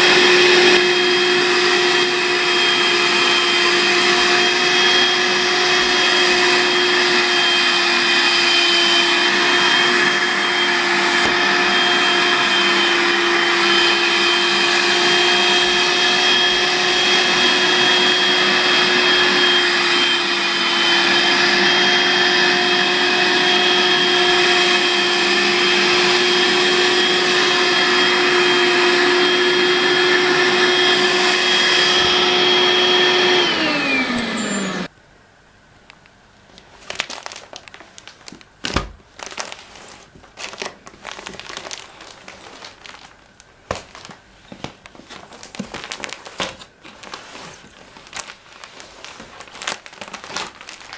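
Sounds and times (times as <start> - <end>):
vacuum motor whine: 0.0 - 34.9.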